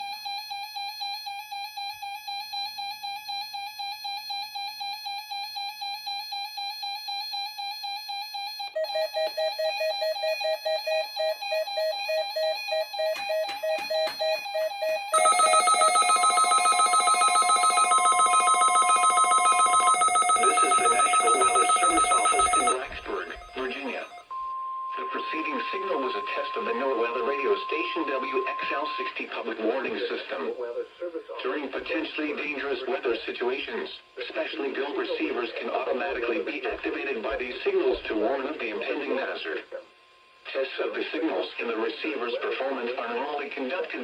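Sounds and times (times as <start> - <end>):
steady high tone: 15.1 - 29.5.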